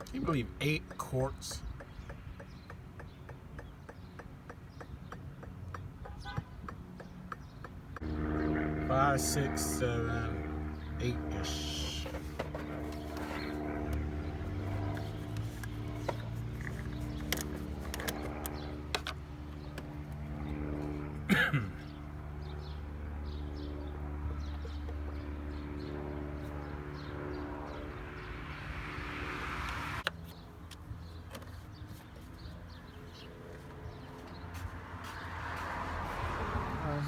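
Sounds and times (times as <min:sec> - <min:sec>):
engine humming: 0:07.9 - 0:37.0.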